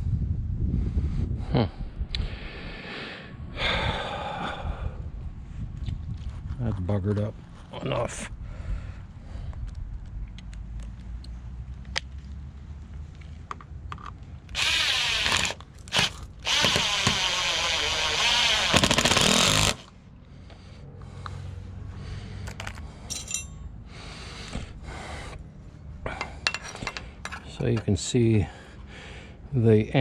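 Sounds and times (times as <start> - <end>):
power drill driving screws: 14.5 - 19.9.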